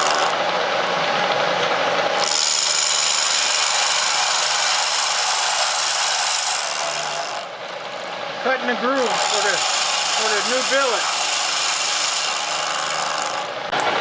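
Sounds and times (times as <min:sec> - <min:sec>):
milling machine cutting metal: 0:00.0 - 0:00.4, 0:02.1 - 0:07.5, 0:08.6 - 0:13.9.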